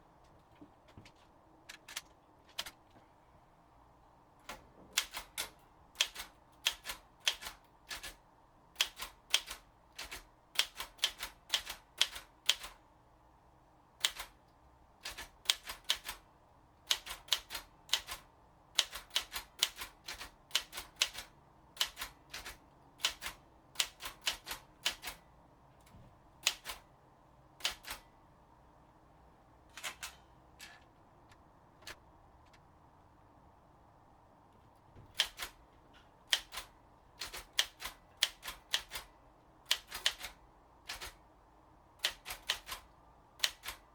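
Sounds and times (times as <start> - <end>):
manual typewriter key strikes: 39.7 - 41.2, 42.0 - 43.8.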